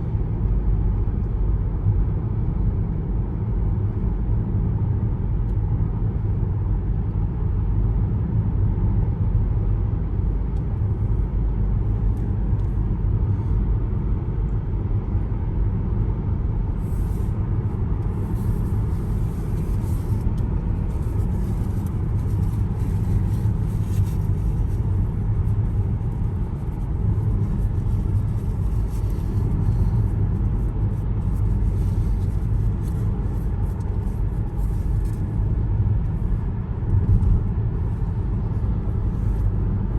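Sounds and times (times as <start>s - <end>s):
car tyres and engine rumble: 0.0s - 39.9s.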